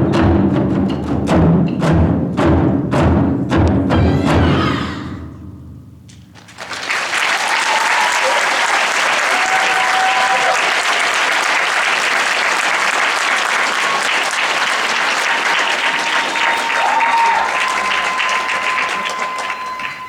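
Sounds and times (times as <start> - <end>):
audience applauding: 6.4 - 20.0
held high note: 16.1 - 20.0.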